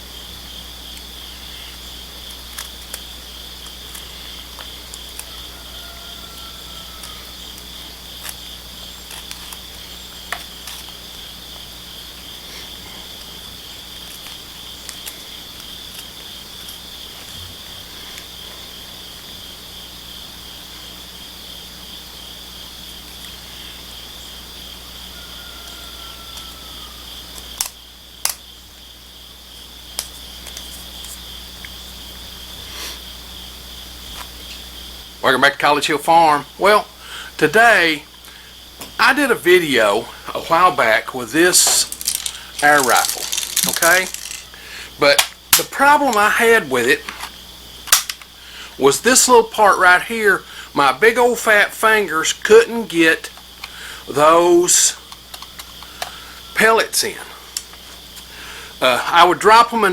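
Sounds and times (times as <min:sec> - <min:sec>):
crickets trilling: 0:00.0 - 0:59.9
sharp clicks: 0:47.8 - 0:48.3.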